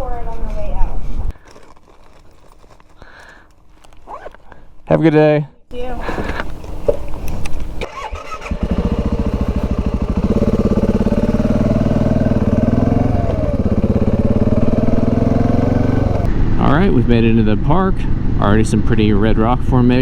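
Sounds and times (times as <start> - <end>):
clicks and handling sounds: 0.3 - 4.6
motorcycle engine running: 5.9 - 16.3.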